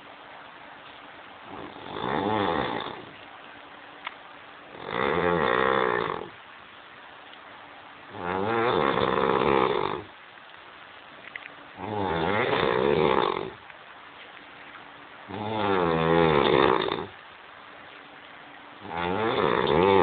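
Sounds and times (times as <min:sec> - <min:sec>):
man snoring: 0:01.5 - 0:03.1, 0:04.7 - 0:06.4, 0:08.1 - 0:10.1, 0:11.8 - 0:13.6, 0:15.3 - 0:17.1, 0:18.8 - 0:20.0.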